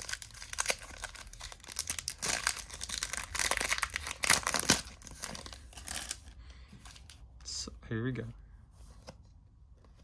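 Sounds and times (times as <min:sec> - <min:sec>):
plastic wrapping crinkling and tearing: 0:00.0 - 0:06.3.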